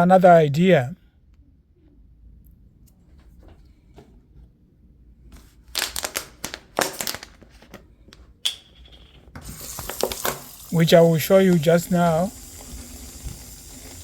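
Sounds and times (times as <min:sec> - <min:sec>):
thin plastic crinkling: 0:05.3 - 0:10.6
water running: 0:09.4 - 0:14.0.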